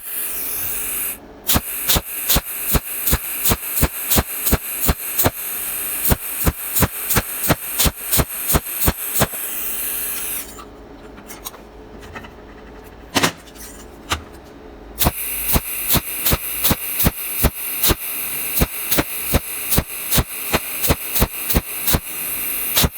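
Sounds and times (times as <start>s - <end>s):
welding arc hissing and crackling: 0.0s - 10.6s, 15.0s - 22.9s.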